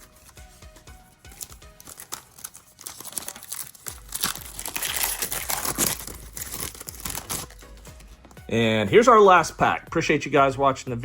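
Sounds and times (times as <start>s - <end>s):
foil wrapper crinkling and tearing: 1.2s - 8.0s.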